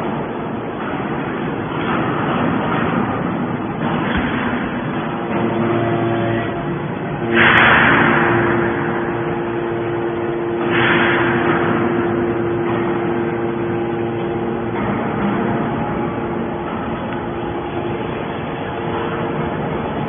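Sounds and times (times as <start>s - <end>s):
baler engine droning: 3.8s - 20.0s.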